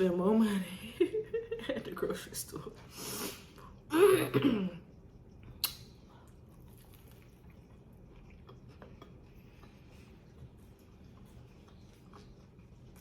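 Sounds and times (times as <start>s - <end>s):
quiet chewing: 4.9s - 13.0s.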